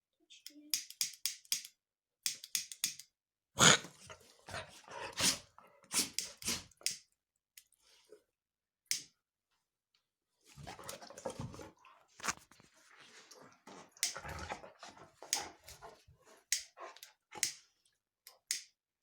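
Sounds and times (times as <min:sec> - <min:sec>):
dog sneezing: 0:03.6 - 0:06.7.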